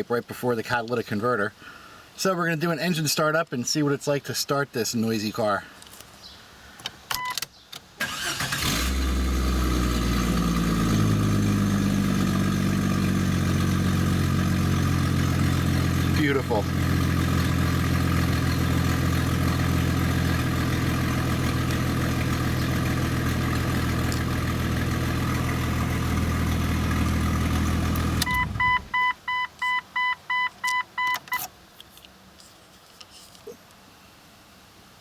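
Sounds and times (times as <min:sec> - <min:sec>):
car engine idling roughly: 0:10.0 - 0:28.2
vehicle warning chime beeping: 0:28.2 - 0:31.4.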